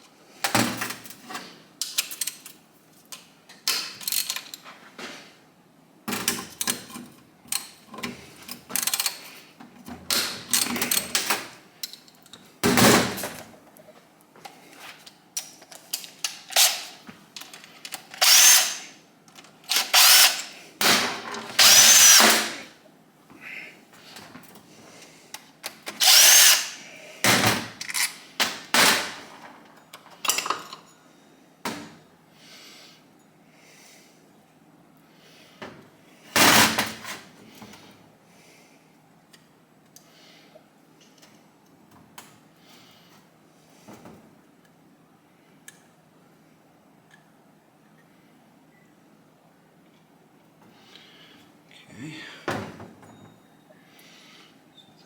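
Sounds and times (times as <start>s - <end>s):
electric power driver whining: 18.2s - 18.9s, 19.7s - 20.6s, 21.5s - 22.7s, 25.9s - 26.8s.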